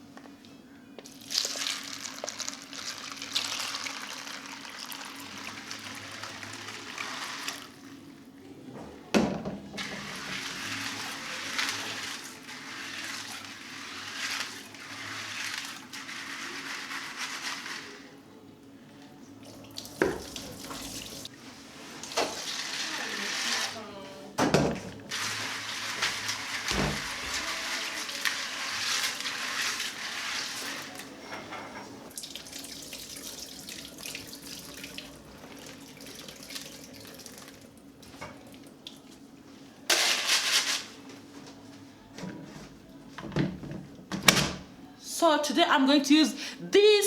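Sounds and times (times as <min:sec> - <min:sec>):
water pouring over beans: 0:01.1 - 0:07.9, 0:09.8 - 0:18.0, 0:19.6 - 0:21.3, 0:25.1 - 0:31.1, 0:32.1 - 0:37.8.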